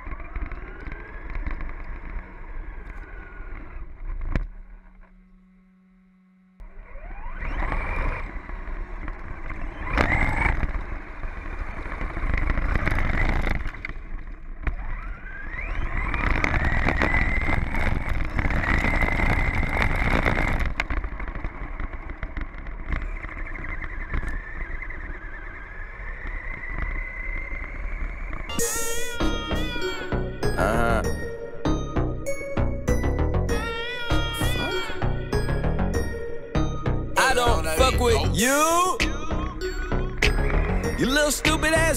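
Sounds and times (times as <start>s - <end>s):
rc car motor whining: 0.0s - 5.1s, 6.6s - 31.4s, 33.5s - 36.2s
gear and tyre rumble: 0.0s - 5.7s, 6.6s - 37.2s, 39.2s - 41.5s.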